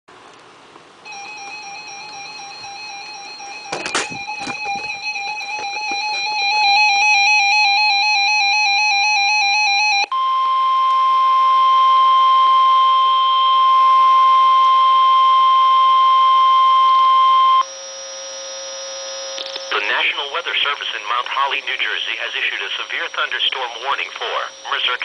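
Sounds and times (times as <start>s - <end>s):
steady warning tone: 1.0s - 25.0s
warbling electronic alarm: 1.0s - 25.0s
faint low hum: 10.1s - 25.0s.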